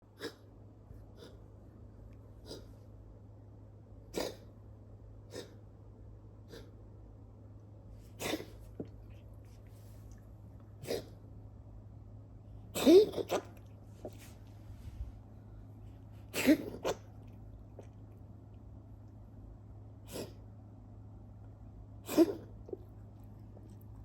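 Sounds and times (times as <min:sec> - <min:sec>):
cat coughing: 0:00.1 - 0:00.5, 0:02.4 - 0:02.7, 0:04.0 - 0:04.5, 0:05.3 - 0:05.6, 0:06.4 - 0:06.7, 0:08.1 - 0:08.6, 0:10.8 - 0:11.2, 0:12.7 - 0:13.6, 0:16.2 - 0:17.2, 0:20.0 - 0:20.4, 0:22.0 - 0:22.9.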